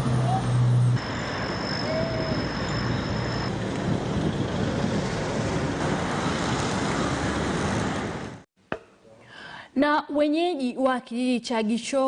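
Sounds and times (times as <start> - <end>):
road traffic noise: 0.0 - 8.5.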